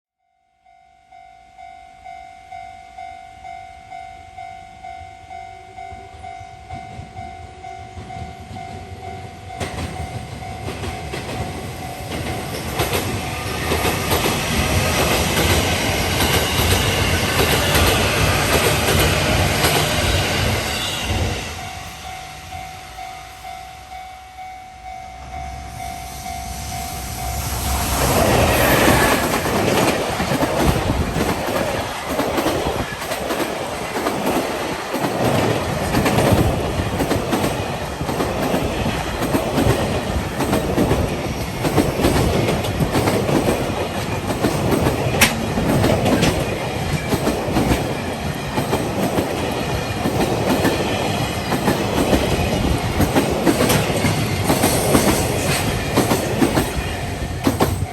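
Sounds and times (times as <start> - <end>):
freight train passing: 1.6 - 57.9
rail joints clicking: 7.8 - 22.1, 27.9 - 57.9.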